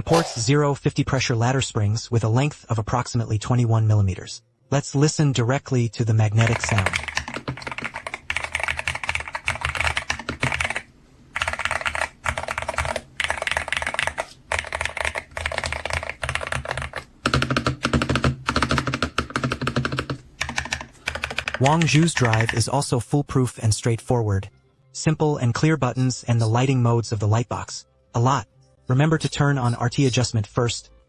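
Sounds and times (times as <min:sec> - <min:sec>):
fast keyboard typing: 0:06.4 - 0:22.7.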